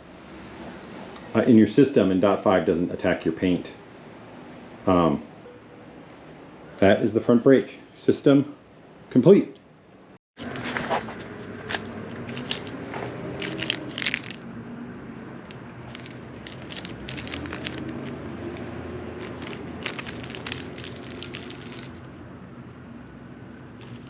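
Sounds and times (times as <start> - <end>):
handling clicks and scrapes: 10.4 - 14.4, 15.5 - 22.0, 23.8 - 24.0.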